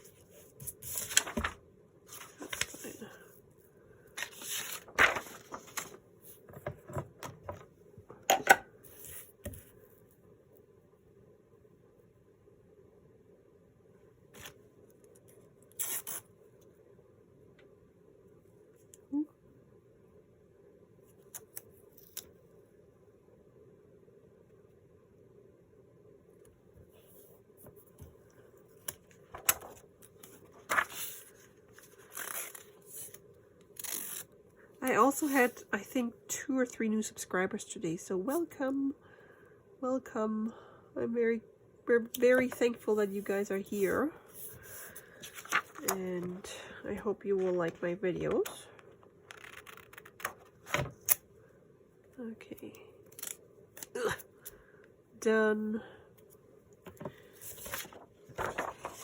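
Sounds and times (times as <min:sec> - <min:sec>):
paper rustling and crinkling: 0:00.0 - 0:03.2, 0:04.2 - 0:07.1, 0:28.8 - 0:33.2, 0:42.3 - 0:46.4, 0:57.0 - 0:59.0
faint steady hum: 0:00.0 - 0:59.0.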